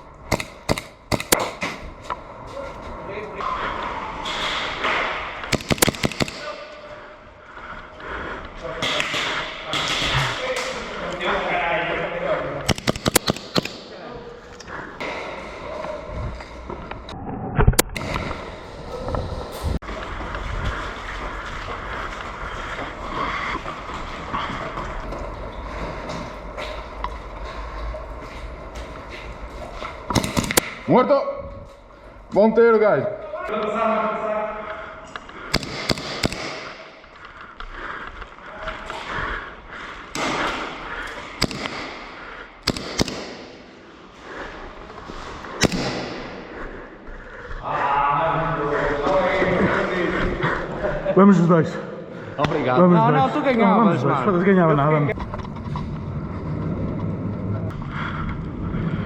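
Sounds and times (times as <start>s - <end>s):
airsoft gun shots: 0.3s - 1.8s, 5.5s - 6.6s, 12.7s - 13.9s, 30.1s - 30.8s, 35.5s - 36.9s, 41.4s - 43.7s, 45.6s - 46.4s
low rumbling: 54.7s - 59.0s.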